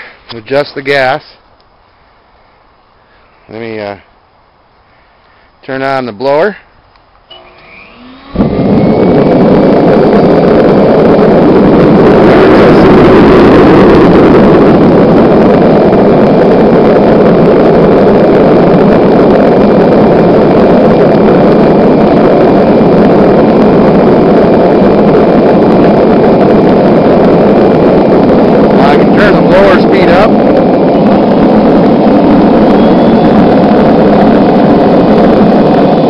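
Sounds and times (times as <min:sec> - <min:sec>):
faint high whine: 0:00.0 - 0:36.0
gas forge burner roaring: 0:06.2 - 0:36.0.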